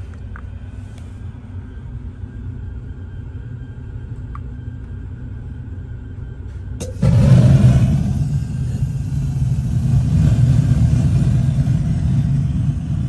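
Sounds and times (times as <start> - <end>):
low steady hum: 1.3 - 13.0
burner click: 6.8 - 12.2
rush of flame with deep rumble: 6.8 - 13.0.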